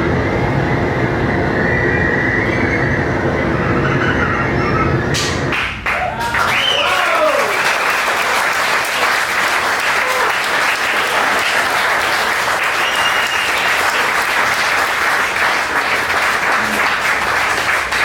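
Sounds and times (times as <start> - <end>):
audience applauding: 5.5 - 18.0.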